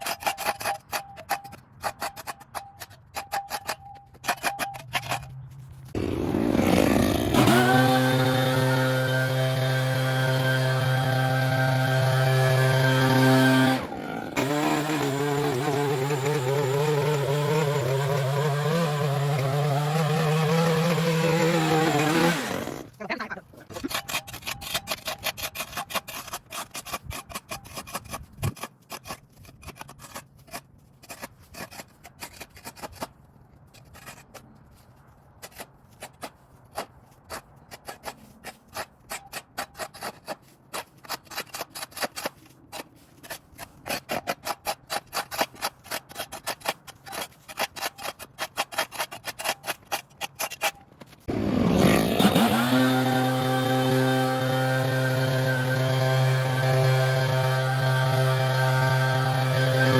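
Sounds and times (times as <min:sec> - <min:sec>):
small gas engine starting: 0:06.0 - 0:23.0, 0:51.3 - 0:59.9.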